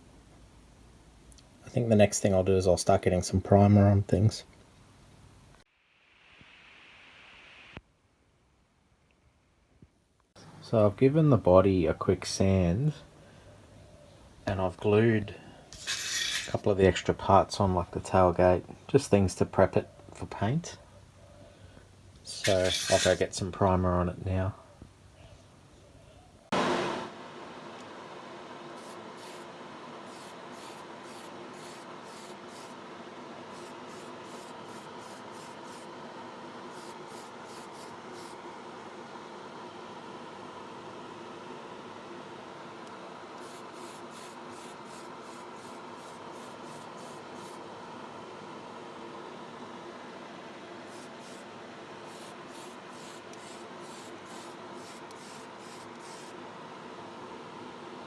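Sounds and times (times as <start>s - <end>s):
steady mechanical hum: 10.3s - 58.0s
spray paint bursts of hiss: 15.8s - 16.6s, 22.4s - 23.2s, 28.8s - 32.8s, 33.5s - 35.9s, 36.7s - 38.4s, 43.4s - 47.6s, 50.9s - 56.4s.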